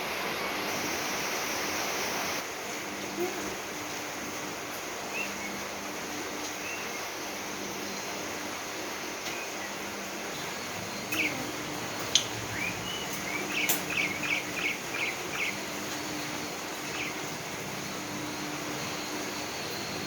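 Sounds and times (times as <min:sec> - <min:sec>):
heavy rain hissing: 0:00.0 - 0:20.0
starling chirping: 0:09.3 - 0:20.0.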